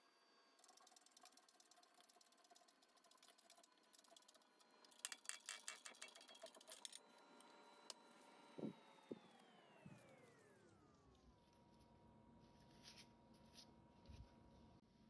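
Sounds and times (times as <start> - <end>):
small metal parts clicking: 0.6 - 7.1
faint steady whine: 6.1 - 14.8.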